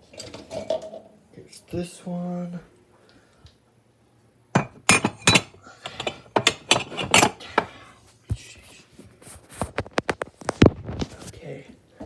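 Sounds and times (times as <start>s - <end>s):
coffee mugs clinking: 4.6s - 7.7s.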